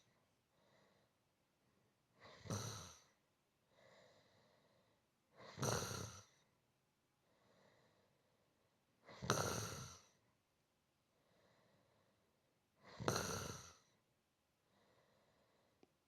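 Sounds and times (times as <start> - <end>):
person snoring: 2.2 - 3.2, 5.4 - 6.4, 9.1 - 10.2, 12.9 - 14.0.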